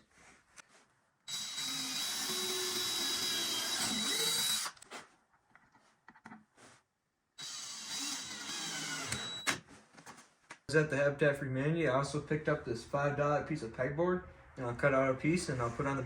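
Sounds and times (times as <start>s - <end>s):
power drill whining: 1.3s - 4.8s, 7.4s - 9.6s.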